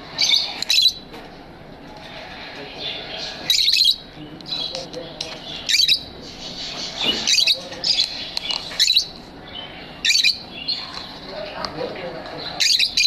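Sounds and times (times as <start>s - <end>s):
birds chattering: 0.0s - 13.0s
shrill bird chirps: 0.2s - 1.1s, 2.8s - 4.8s, 5.5s - 11.0s, 12.6s - 13.0s.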